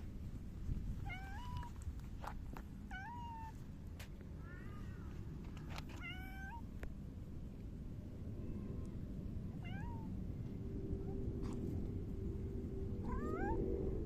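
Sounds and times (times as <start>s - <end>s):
cat meowing: 1.0s - 1.7s, 2.9s - 3.6s, 4.4s - 5.2s, 5.9s - 6.6s, 9.6s - 10.1s, 13.0s - 13.7s.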